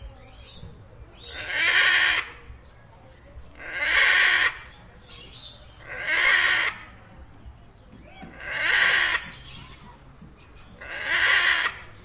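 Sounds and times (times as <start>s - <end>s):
macaw squawking: 3.6s - 4.7s, 8.3s - 9.8s, 10.8s - 11.9s.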